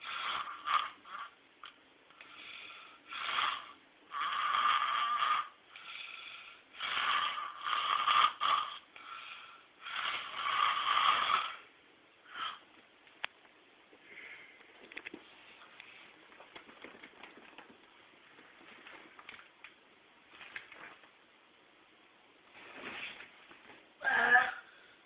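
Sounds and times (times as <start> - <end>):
person snoring: 2.4 - 11.7.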